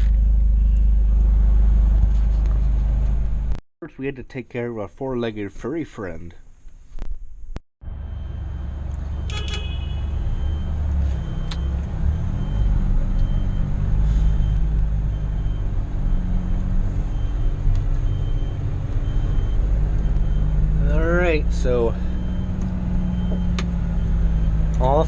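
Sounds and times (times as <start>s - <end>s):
tractor engine running: 0.0s - 3.6s, 7.8s - 25.0s.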